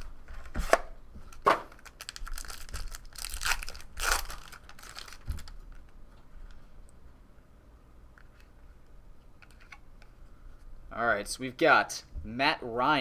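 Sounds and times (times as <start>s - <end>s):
plastic wrapping tearing and crinkling: 1.7s - 5.9s.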